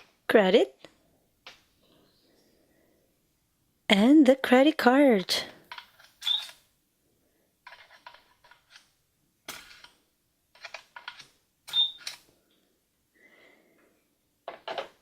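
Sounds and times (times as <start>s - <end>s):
short high chirp: 6.2s - 6.5s, 11.7s - 12.0s.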